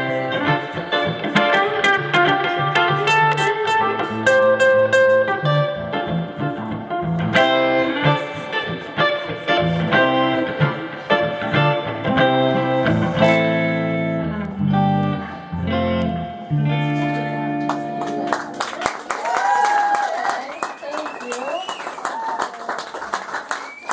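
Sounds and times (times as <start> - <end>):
bass line: 0.0 - 18.3
guitar picking a melody: 0.0 - 18.8.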